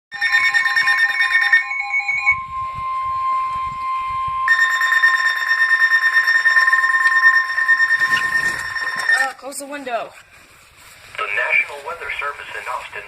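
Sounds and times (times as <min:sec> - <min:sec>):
steady alarm tone: 0:00.1 - 0:09.4
pulsing electronic beep: 0:01.6 - 0:05.0, 0:07.8 - 0:09.3.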